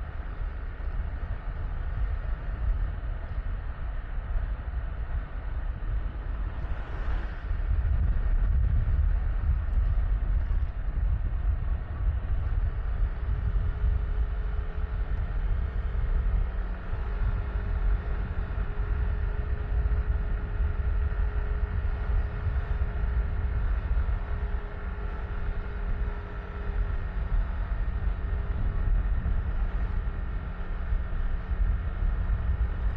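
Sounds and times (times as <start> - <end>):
wind buffeting microphone: 0.0 - 32.9
scooter engine: 14.1 - 32.9.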